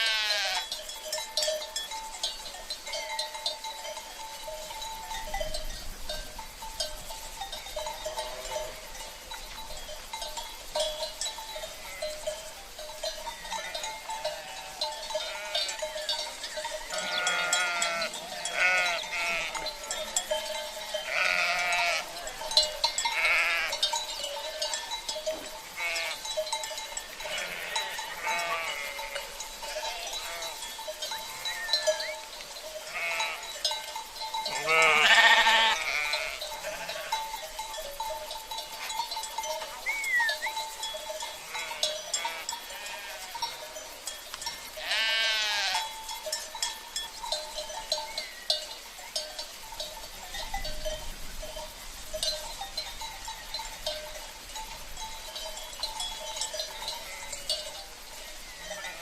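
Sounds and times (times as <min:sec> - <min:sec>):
sheep bleating: 0:00.0 - 0:00.7, 0:13.5 - 0:16.0, 0:16.9 - 0:19.7, 0:21.0 - 0:22.4, 0:23.1 - 0:23.9, 0:25.8 - 0:26.2, 0:27.2 - 0:30.6, 0:32.9 - 0:33.5, 0:34.5 - 0:37.2, 0:41.4 - 0:43.4, 0:44.8 - 0:45.9
livestock bells clinking: 0:00.0 - 0:59.0.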